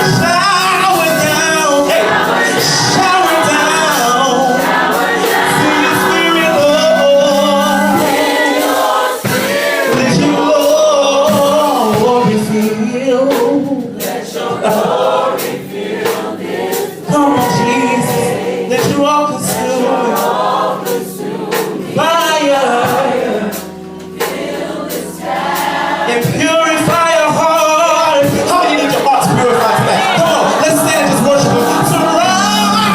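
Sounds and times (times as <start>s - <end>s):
male soloist singing: 0.0s - 8.2s, 9.9s - 14.9s, 17.1s - 20.3s, 22.0s - 23.5s, 26.1s - 32.9s
choir singing: 0.0s - 32.9s
instrumental accompaniment: 0.0s - 32.9s.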